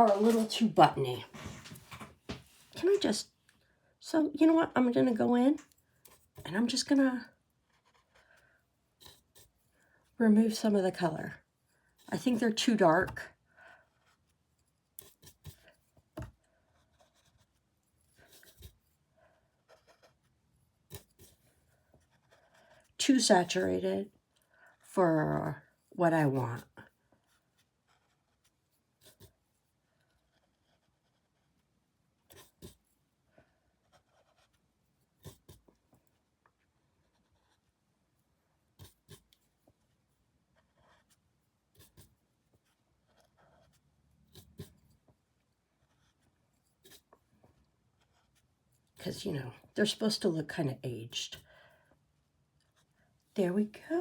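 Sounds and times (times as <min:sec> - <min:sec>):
paintbrush scratching on canvas: 0:13.8 - 0:23.0, 0:27.2 - 0:37.8.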